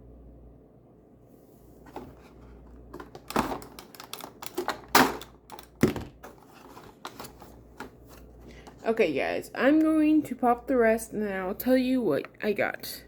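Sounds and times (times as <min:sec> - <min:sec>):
cardboard and plastic clicks: 0:03.0 - 0:08.0.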